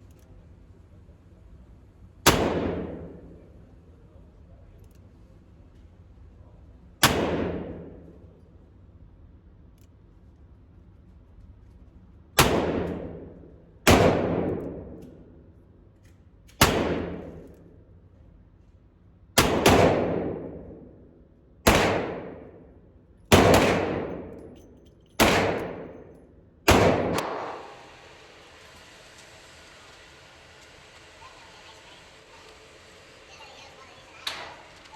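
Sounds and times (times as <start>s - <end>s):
revolver shots with ringing decay: 2.3s - 3.4s, 7.0s - 8.0s, 12.4s - 13.3s, 13.9s - 15.0s, 16.6s - 17.4s, 19.4s - 21.0s, 21.7s - 22.7s, 23.3s - 27.9s.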